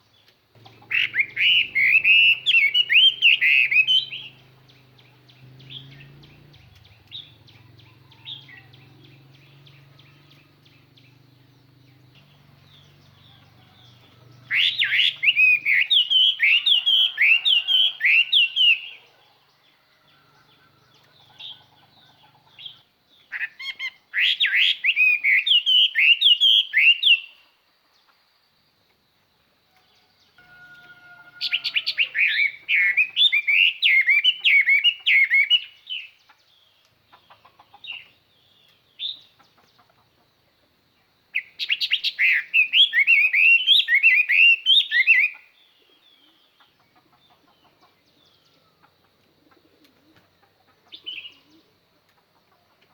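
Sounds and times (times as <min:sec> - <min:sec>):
soft bird ticking calls: 0:00.0 - 0:19.2, 0:31.6 - 0:40.5
bird whistling song: 0:00.7 - 0:19.2, 0:20.9 - 0:27.4, 0:30.4 - 0:36.2, 0:41.3 - 0:46.4.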